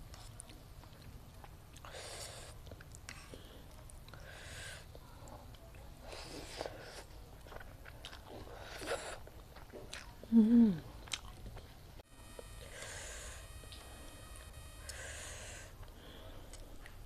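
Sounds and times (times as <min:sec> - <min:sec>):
chewing and biting food: 0:00.0 - 0:04.2, 0:05.2 - 0:10.3, 0:10.9 - 0:11.8
person humming mm: 0:10.3 - 0:10.9.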